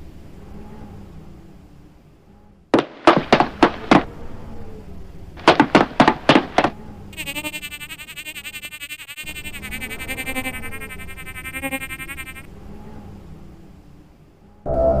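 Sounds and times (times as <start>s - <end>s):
quick sharp knocks: 2.8s - 4.1s, 5.4s - 6.7s
warbling electronic tone: 7.2s - 12.5s.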